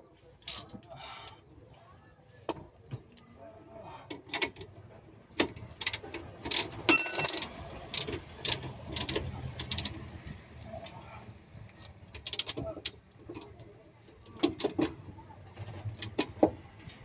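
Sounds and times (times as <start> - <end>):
loud ringing metallic clang: 6.9 - 7.9
metal tools clinking and knocking: 6.9 - 8.0.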